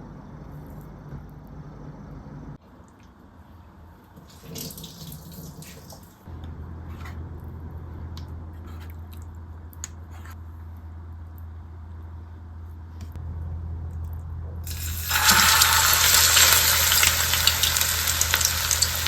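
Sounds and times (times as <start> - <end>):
tap water running into sink: 14.7 - 19.0.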